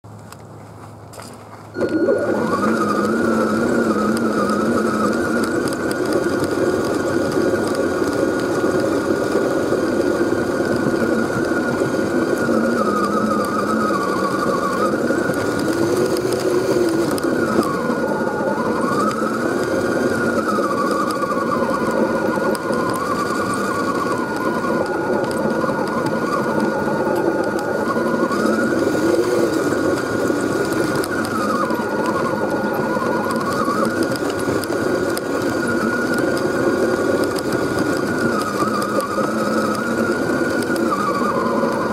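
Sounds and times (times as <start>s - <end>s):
electric motor and gearbox whining: 0.1s - 41.9s
steady high tone: 1.7s - 9.2s.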